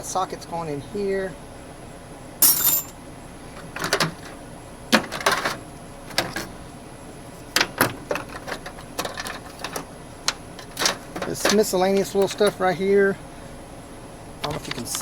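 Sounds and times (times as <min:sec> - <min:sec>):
metal tools clinking: 0:02.4 - 0:03.0.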